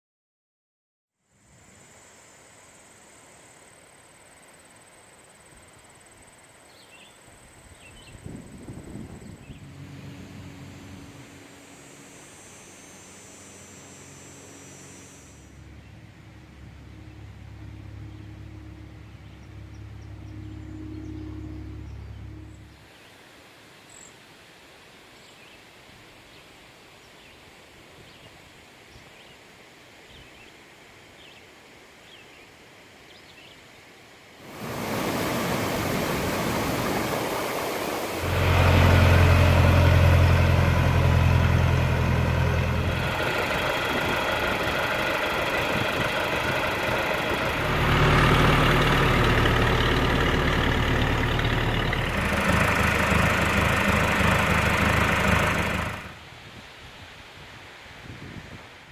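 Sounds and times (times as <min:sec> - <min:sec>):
riding mower engine running: 0:08.0 - 0:22.8, 0:34.4 - 0:56.3.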